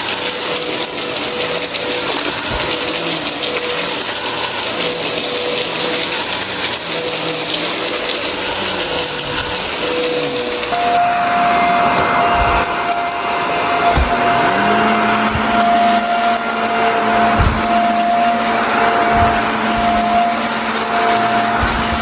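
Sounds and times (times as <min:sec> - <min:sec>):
vacuum cleaner running: 0:00.0 - 0:22.0
low knocks: 0:15.3 - 0:15.8.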